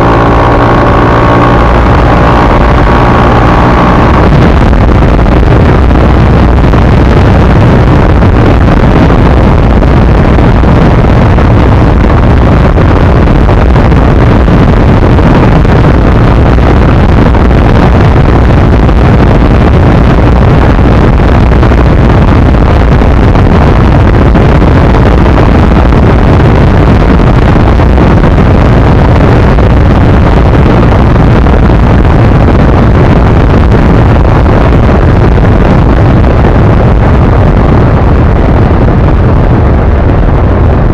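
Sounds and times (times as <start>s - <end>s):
motorcycle engine: 0.0s - 18.8s
wind buffeting microphone: 0.0s - 40.9s.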